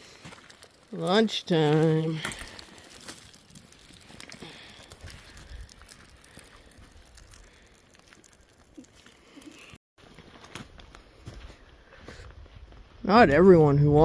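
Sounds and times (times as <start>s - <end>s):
small clicks and ticks: 0.0s - 9.8s.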